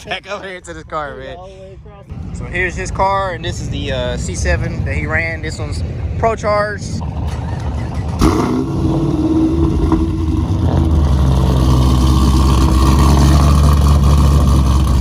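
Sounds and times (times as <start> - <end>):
car engine running loudly: 6.8 - 15.0.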